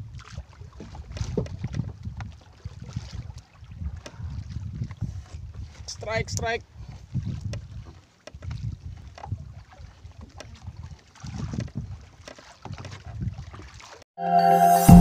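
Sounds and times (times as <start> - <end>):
wind buffeting microphone: 0.0 - 9.7, 10.6 - 12.0.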